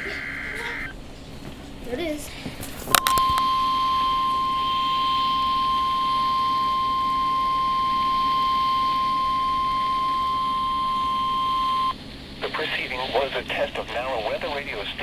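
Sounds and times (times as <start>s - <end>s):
steady alarm tone: 0.0s - 1.0s, 2.9s - 12.4s.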